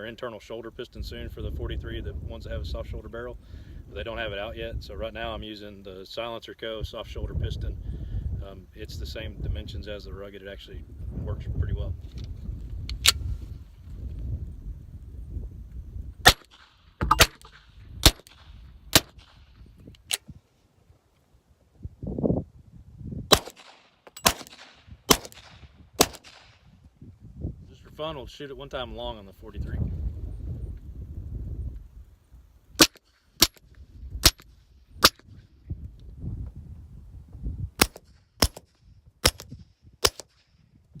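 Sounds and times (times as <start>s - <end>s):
suppressed pistol shots: 16.2s - 19.5s, 23.3s - 26.6s, 32.8s - 35.2s, 37.8s - 40.4s.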